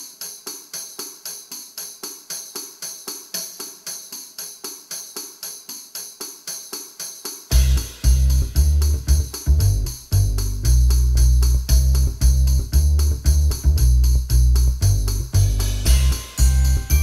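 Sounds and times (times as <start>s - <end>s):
jingling percussion: 0.0s - 17.0s
loud bass and full band: 7.5s - 17.0s.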